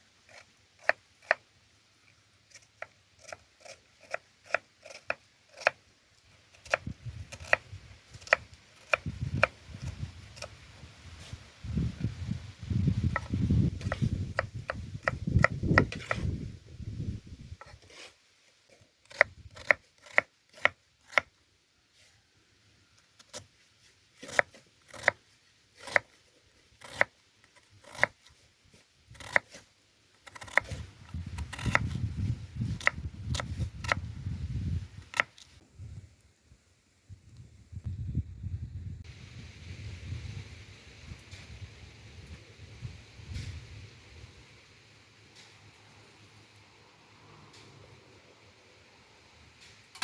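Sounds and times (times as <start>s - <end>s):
knife chopping on wooden board: 13.1s - 16.2s, 32.7s - 34.0s.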